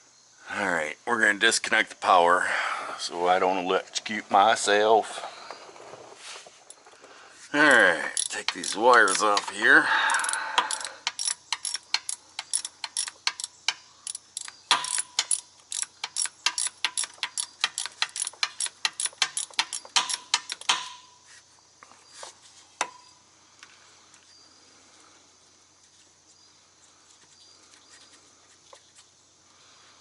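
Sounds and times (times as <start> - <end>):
metal clinks: 7.7 - 21.1
ratchet wrench clicking: 7.9 - 21.0.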